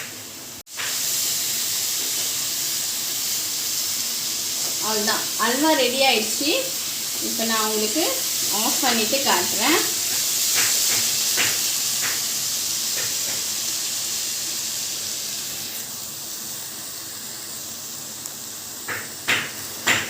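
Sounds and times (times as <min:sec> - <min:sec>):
food sizzling in a pan: 0:00.0 - 0:20.0
sharp knocks: 0:18.9 - 0:20.0.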